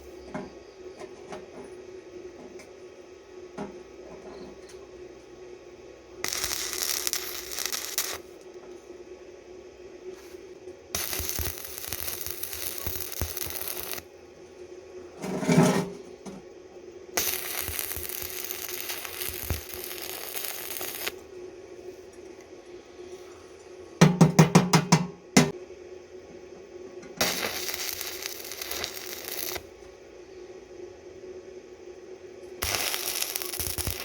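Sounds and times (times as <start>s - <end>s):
arc welding crackling hiss: 6.2s - 8.5s, 10.1s - 14.1s, 17.1s - 21.3s, 27.1s - 29.9s, 32.5s - 34.0s
hammer strikes on metal: 24.0s - 25.6s.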